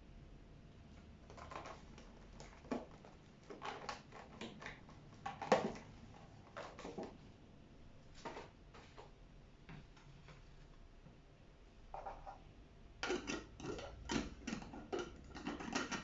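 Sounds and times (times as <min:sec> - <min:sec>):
kitchen objects knocking and scraping: 0:13.0 - 0:16.0.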